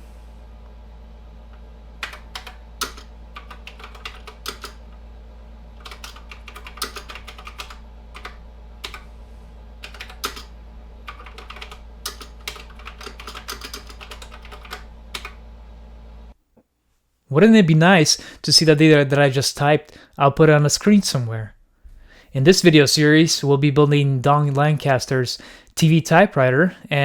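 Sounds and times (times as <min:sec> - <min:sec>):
steady low hum: 0:00.0 - 0:16.6
keyboard typing clicks: 0:02.0 - 0:04.8, 0:05.8 - 0:09.0, 0:09.8 - 0:10.5, 0:11.1 - 0:15.4.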